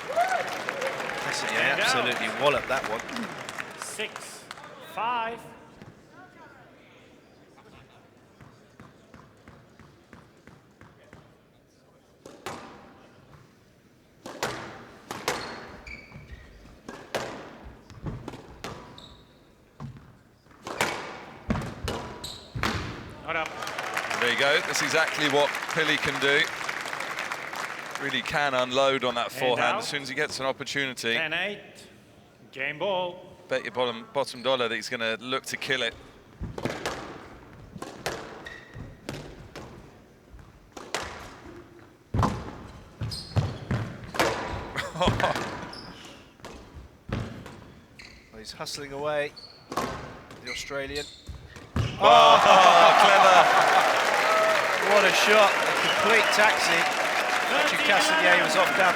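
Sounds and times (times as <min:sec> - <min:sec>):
shoes squeaking on court: 0:15.3 - 0:16.9, 0:17.8 - 0:20.9, 0:21.5 - 0:23.0, 0:38.3 - 0:39.1, 0:42.6 - 0:44.2, 0:45.6 - 0:48.4, 0:49.3 - 0:52.0
squash ball hits: 0:20.6 - 0:23.1, 0:36.4 - 0:38.4.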